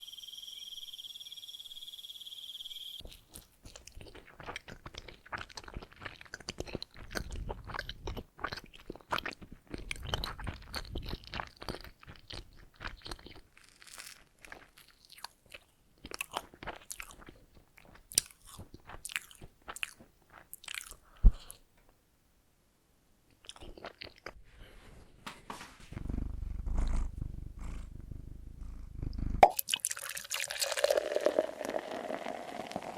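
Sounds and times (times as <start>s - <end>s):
crunchy chewing: 3.0s - 21.6s, 23.4s - 24.4s.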